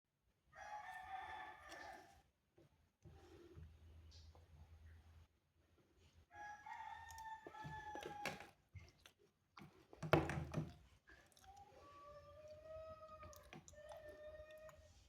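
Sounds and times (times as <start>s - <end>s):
rooster crowing: 0.6s - 2.1s, 6.3s - 8.4s.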